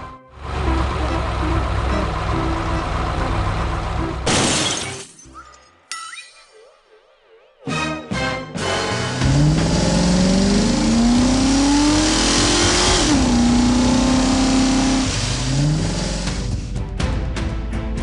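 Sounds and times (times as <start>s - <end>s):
cartoon engine revving: 9.2s - 16.5s.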